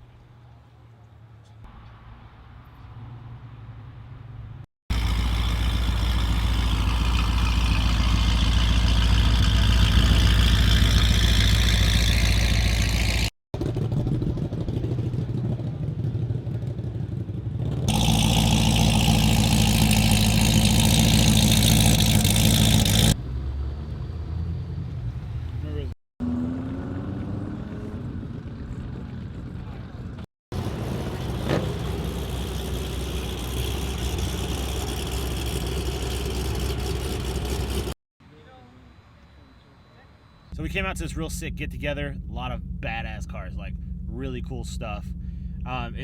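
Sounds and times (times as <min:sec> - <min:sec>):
loud car engines running: 0:04.9 - 0:38.0.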